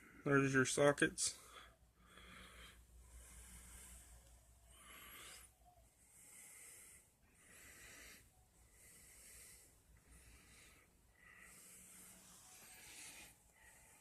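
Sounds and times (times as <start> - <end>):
faint breathing: 1.2 - 14.0.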